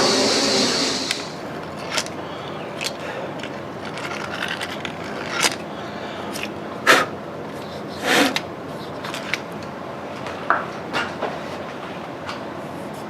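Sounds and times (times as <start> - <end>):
metal lathe hissing: 0.0 - 2.6.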